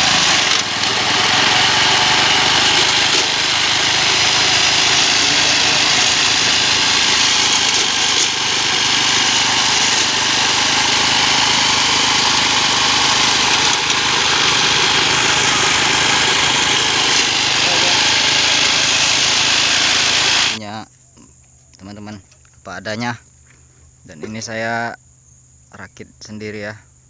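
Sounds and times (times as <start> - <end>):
small engine running steadily: 0.0 - 20.6.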